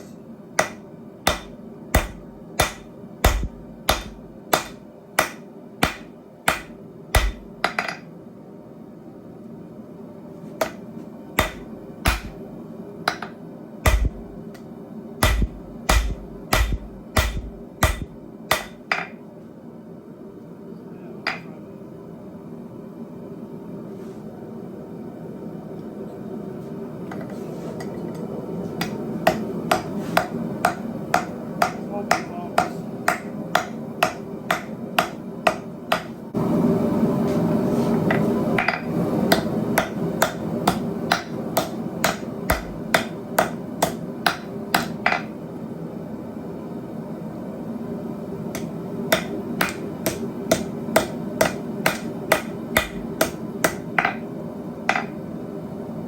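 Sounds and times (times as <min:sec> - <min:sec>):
hammer striking steel on anvil: 0:00.0 - 0:08.1, 0:11.4 - 0:12.4, 0:13.1 - 0:14.3, 0:15.2 - 0:19.2, 0:28.8 - 0:36.2, 0:38.6 - 0:45.3, 0:48.6 - 0:54.2, 0:54.9 - 0:55.2.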